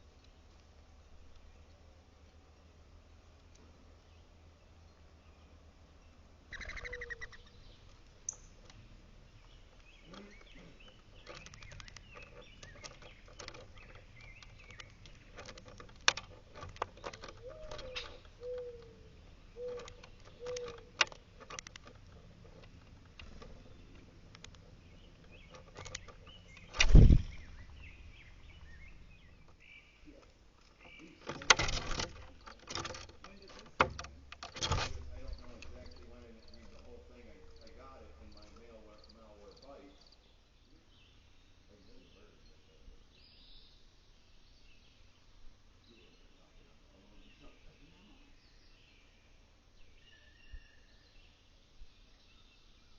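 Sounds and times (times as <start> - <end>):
bird low calls: 4.0 - 44.0
sharp clicks and taps: 19.7 - 24.6.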